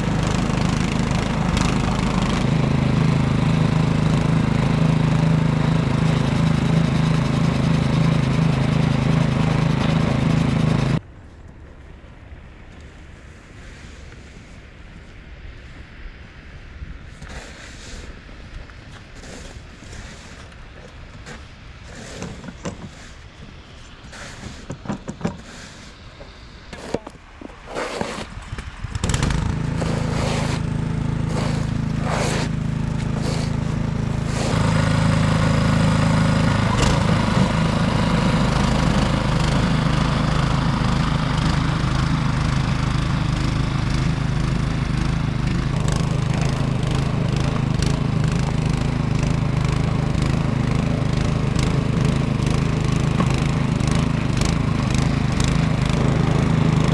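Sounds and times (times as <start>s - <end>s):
small gasoline engine running: 0.0s - 11.0s, 27.8s - 56.9s
scrapes and knocks: 21.2s - 23.5s, 24.2s - 25.8s.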